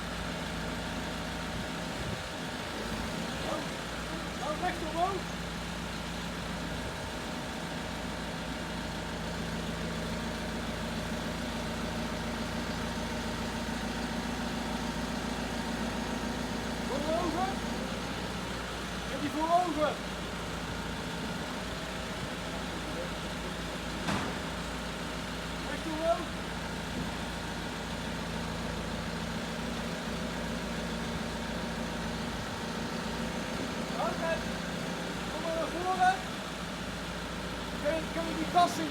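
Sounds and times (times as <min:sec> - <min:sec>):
forklift engine running: 0:00.0 - 0:38.9.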